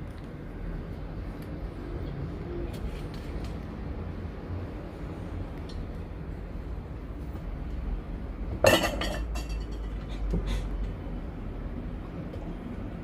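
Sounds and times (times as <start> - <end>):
kitchenware clinking: 8.6 - 10.2.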